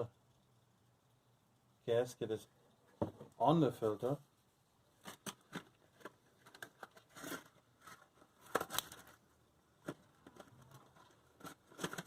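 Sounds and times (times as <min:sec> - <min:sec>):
rustling: 0:05.0 - 0:12.0.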